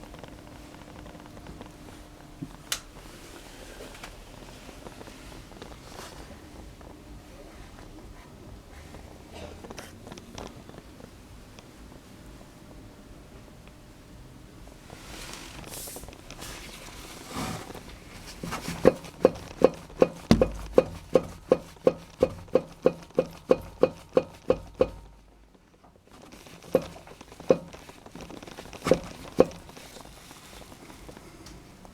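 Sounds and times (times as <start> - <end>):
sharp metallic knocks: 18.8 - 25.2, 26.7 - 27.8.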